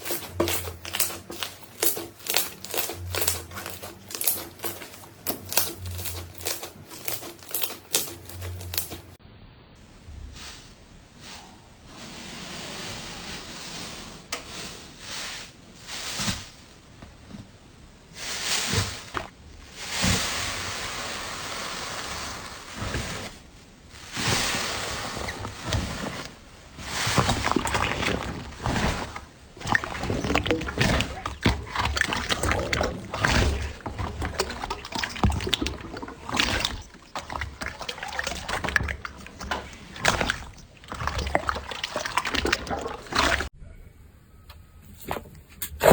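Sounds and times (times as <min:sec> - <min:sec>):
slime squelching and popping: 0:00.0 - 0:09.2, 0:24.0 - 0:43.5.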